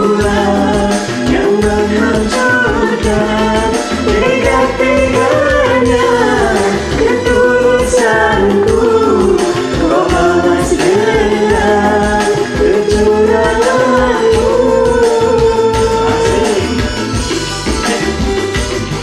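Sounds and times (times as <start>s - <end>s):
person singing: 0.0s - 17.2s
karaoke backing track: 0.0s - 19.0s.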